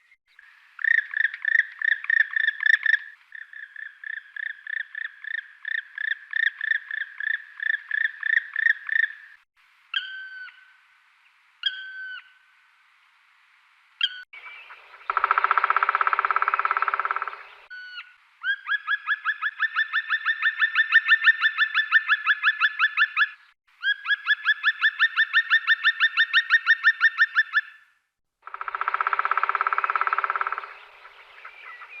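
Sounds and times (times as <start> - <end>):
woodpecker ringing calls: 0.8 - 9.3, 14.0 - 27.8, 28.4 - 32.0
woodpecker drumming on wood: 15.0 - 17.6, 28.4 - 30.9.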